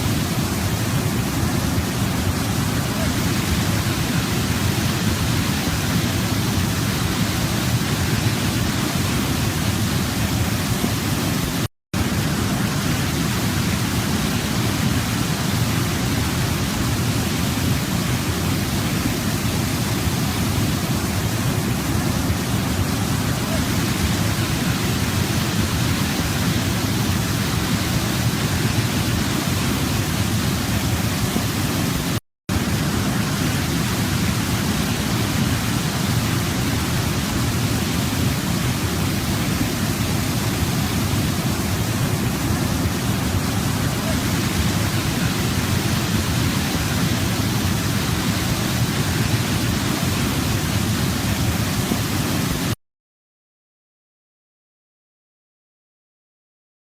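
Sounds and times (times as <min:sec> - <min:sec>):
waterfall rushing: 0:00.0 - 0:52.8.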